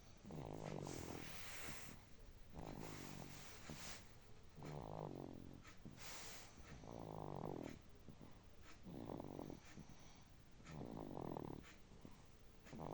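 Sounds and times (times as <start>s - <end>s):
soft breathy hiss: 0.0s - 12.9s
baby snoring: 0.2s - 7.8s, 8.6s - 9.9s, 10.7s - 11.8s, 12.7s - 12.9s.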